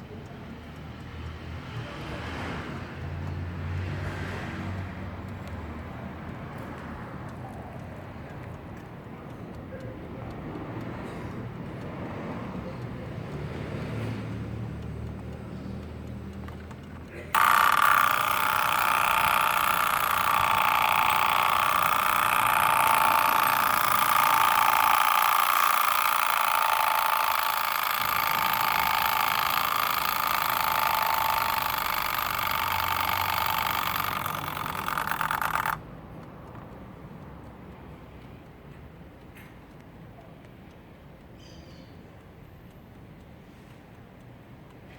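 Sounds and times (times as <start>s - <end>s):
alarm clock ringing: 17.4s - 35.8s.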